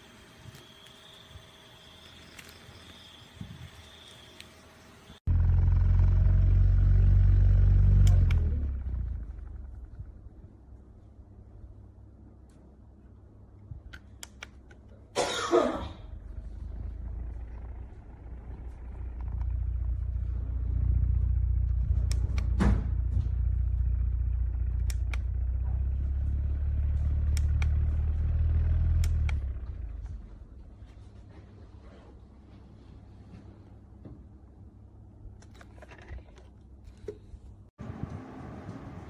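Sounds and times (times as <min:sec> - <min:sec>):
portable fan running: 0:00.0 - 0:05.2
sharp clicks: 0:13.9 - 0:15.0.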